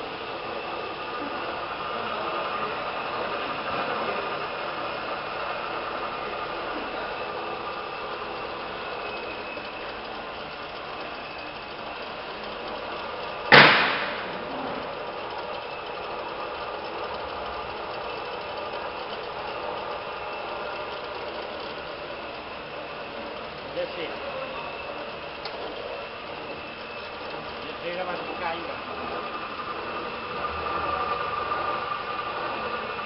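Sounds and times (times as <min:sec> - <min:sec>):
stone cutting machine running: 0:00.0 - 0:33.0
sharp bang: 0:13.5 - 0:14.6.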